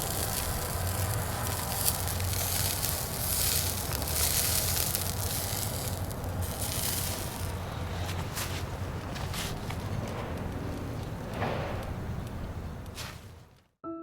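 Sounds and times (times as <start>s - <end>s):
food sizzling on grill: 0.0s - 7.9s
fire crackling: 0.0s - 13.6s.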